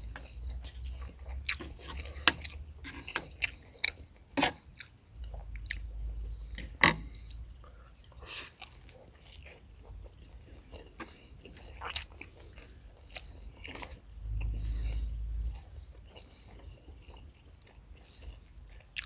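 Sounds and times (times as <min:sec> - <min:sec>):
chewing and biting food: 0:00.0 - 0:04.0, 0:04.6 - 0:05.9, 0:08.2 - 0:15.0
steady high-pitched whine: 0:00.0 - 0:18.8.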